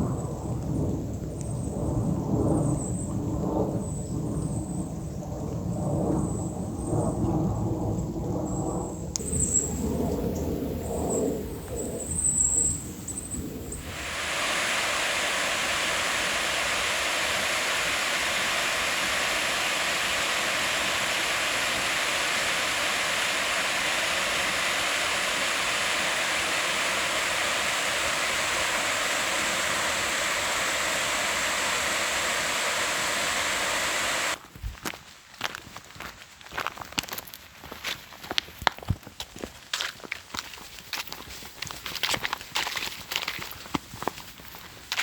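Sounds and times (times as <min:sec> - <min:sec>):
steady rushing noise: 0:09.2 - 0:34.4.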